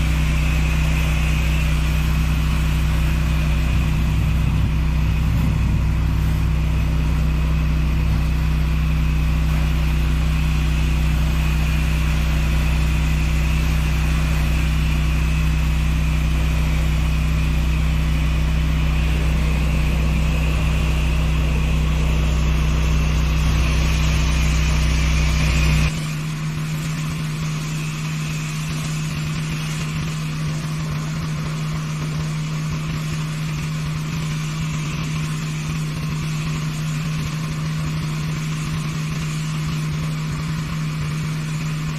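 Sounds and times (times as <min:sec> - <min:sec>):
high-pressure water spray hiss: 0:00.0 - 0:41.9
pressure washer engine drone: 0:00.0 - 0:41.9
deep low rumble: 0:02.0 - 0:10.0, 0:16.7 - 0:25.9.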